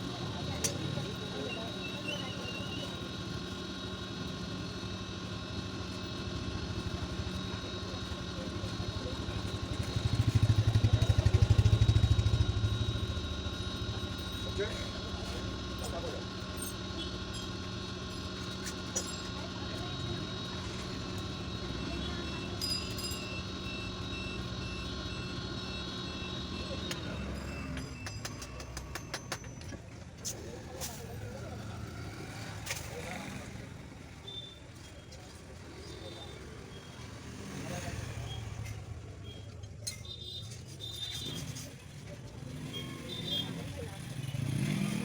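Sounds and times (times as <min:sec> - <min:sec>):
motor running with low rumble: 0:00.0 - 0:29.4.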